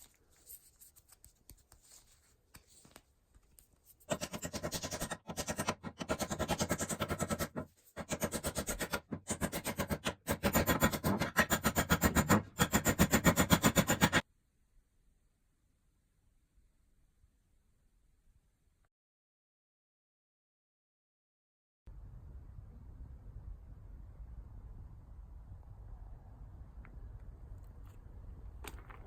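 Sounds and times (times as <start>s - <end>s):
faint handling sounds: 0.0s - 4.1s
hand rubbing an axe: 4.0s - 14.2s.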